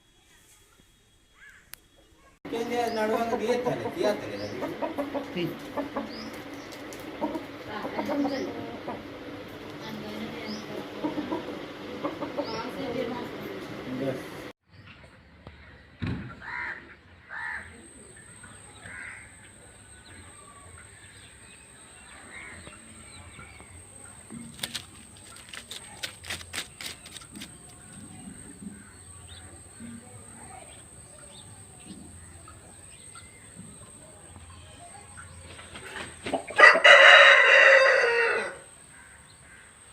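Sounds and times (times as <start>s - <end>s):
chicken clucking: 3.0s - 9.4s, 10.5s - 13.0s
rooster crowing: 36.5s - 38.7s.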